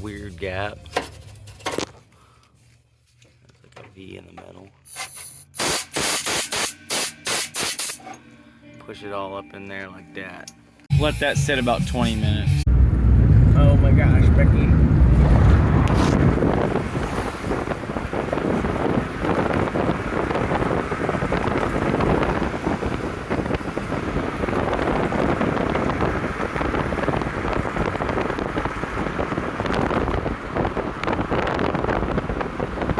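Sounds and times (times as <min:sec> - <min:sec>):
wind buffeting microphone: 0:12.7 - 0:32.9.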